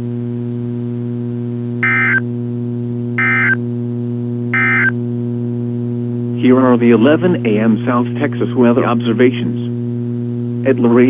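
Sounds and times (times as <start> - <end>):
steady hum: 0.0 - 11.0
warbling digital data tones: 1.8 - 2.2, 3.2 - 3.6, 4.6 - 4.9.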